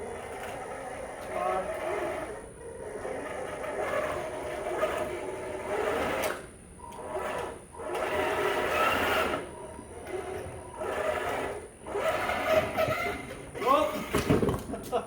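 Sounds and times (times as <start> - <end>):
electric motors whirring: 0.4 - 14.0.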